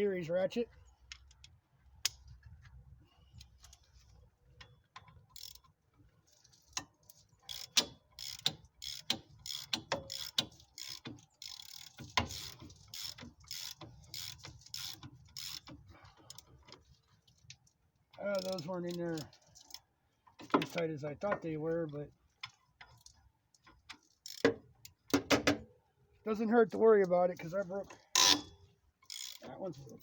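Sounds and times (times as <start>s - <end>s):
ratchet clicking: 5.0s - 5.7s, 6.7s - 16.5s, 18.4s - 19.8s, 24.0s - 24.6s, 28.0s - 29.5s.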